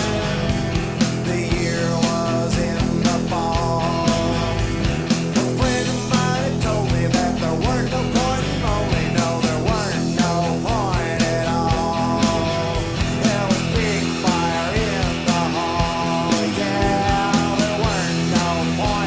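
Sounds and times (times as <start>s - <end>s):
rock song from vinyl record: 0.0s - 19.0s.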